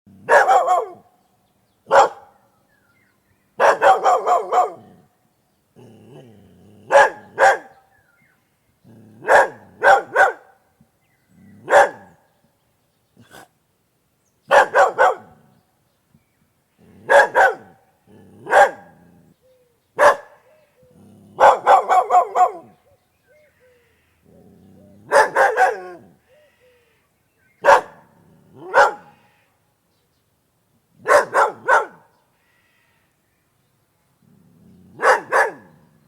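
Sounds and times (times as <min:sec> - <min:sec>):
dog barking: 0:00.2 - 0:01.1, 0:01.9 - 0:02.4, 0:03.6 - 0:04.9, 0:06.8 - 0:07.8, 0:09.2 - 0:10.6, 0:11.6 - 0:12.2, 0:14.5 - 0:15.4, 0:17.0 - 0:17.8, 0:18.4 - 0:19.0, 0:20.0 - 0:20.5, 0:21.4 - 0:22.8, 0:25.0 - 0:26.1, 0:27.6 - 0:29.2, 0:31.0 - 0:32.1, 0:35.0 - 0:35.9.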